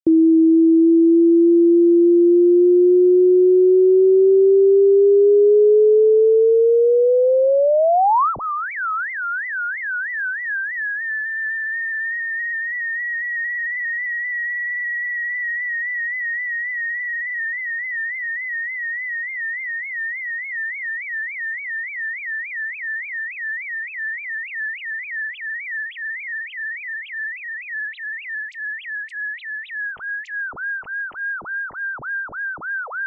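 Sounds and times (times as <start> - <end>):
pulsing high electronic tone: 0.1 - 8.4.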